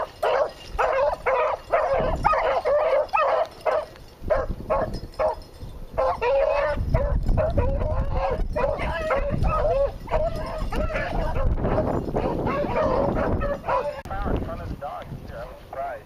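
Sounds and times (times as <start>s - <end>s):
dogs yelping barks: 0.0s - 14.1s
microphone rumble: 6.8s - 15.4s.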